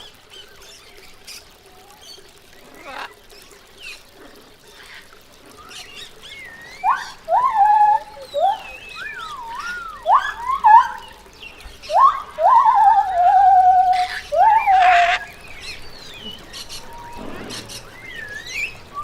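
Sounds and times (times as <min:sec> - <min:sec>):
animal calls rising and wavering: 0:04.4 - 0:18.7
high gliding whistles: 0:06.4 - 0:11.2.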